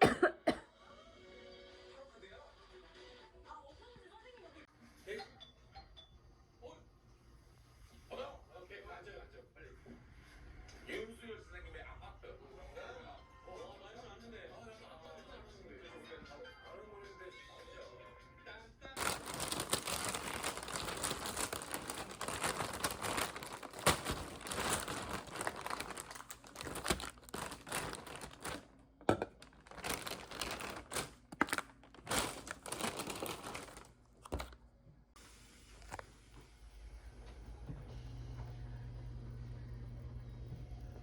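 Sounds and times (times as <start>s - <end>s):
crinkling and rustling: 19.0s - 34.7s.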